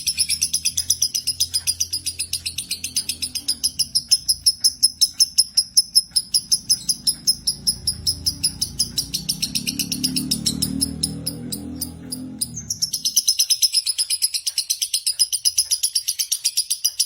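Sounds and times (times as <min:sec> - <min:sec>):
low hum: 0:00.0 - 0:13.4
lovebird chirping: 0:00.0 - 0:17.0.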